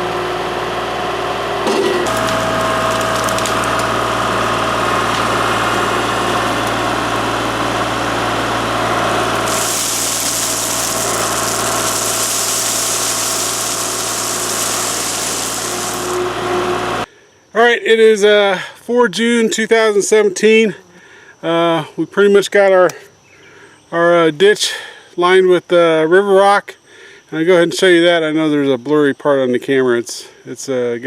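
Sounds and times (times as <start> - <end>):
loud rushing hiss: 9.4 - 16.4.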